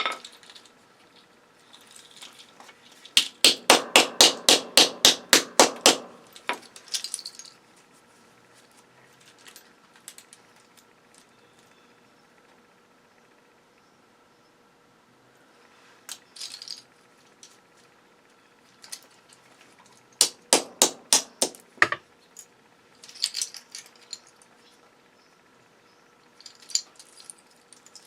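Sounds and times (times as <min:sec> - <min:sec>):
hammer blows on metal: 0:03.2 - 0:06.3.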